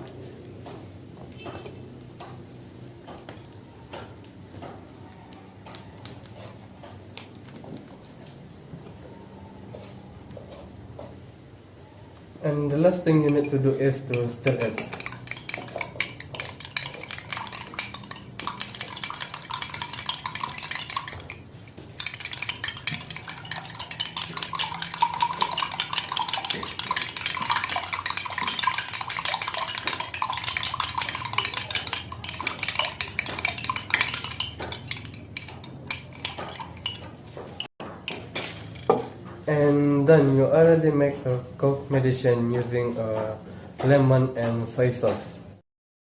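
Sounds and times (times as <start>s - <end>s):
spoon clinking against glass: 12.8s - 39.2s.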